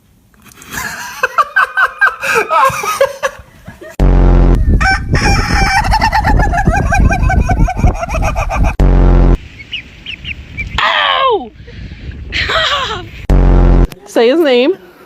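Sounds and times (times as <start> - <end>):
heavy low rumbling noise: 4.0 - 7.5, 8.7 - 9.5, 11.6 - 14.0
chickens squawking: 4.7 - 8.8, 9.5 - 11.3
chickens clucking: 5.3 - 8.8, 9.5 - 10.8.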